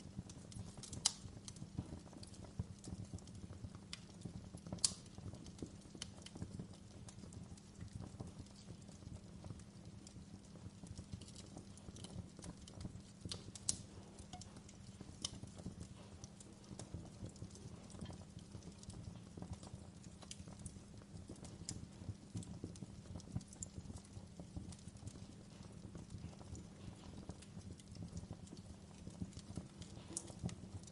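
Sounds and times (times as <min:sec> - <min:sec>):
campfire crackling: 0:00.0 - 0:30.9
flames rumbling: 0:00.0 - 0:30.9.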